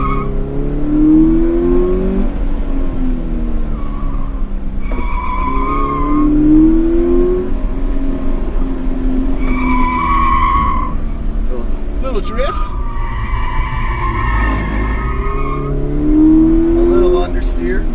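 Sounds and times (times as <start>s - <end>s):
car engine revving: 0.0s - 17.9s.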